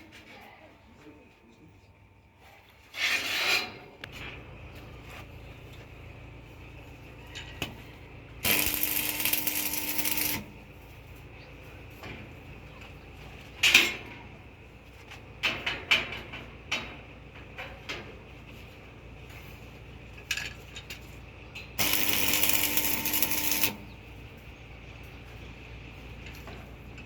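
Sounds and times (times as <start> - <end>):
loud noisy machine whir: 21.8 - 23.9.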